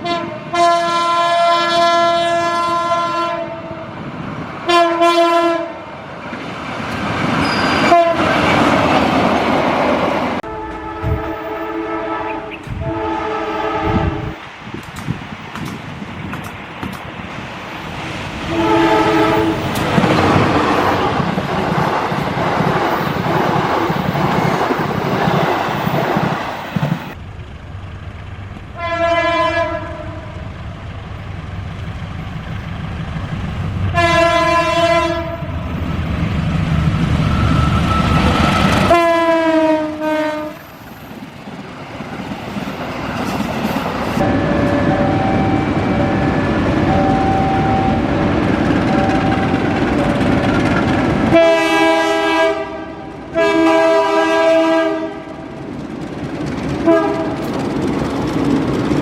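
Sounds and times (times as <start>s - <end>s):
locomotive horn blasts: 0.0s - 3.9s, 4.7s - 5.8s, 7.4s - 8.4s, 10.4s - 14.4s, 18.4s - 19.9s, 28.8s - 30.4s, 33.9s - 35.6s, 37.6s - 40.7s, 44.2s - 48.3s, 48.9s - 49.8s, 51.3s - 55.4s, 56.8s - 57.5s
passing train rumble and clatter: 0.0s - 59.0s.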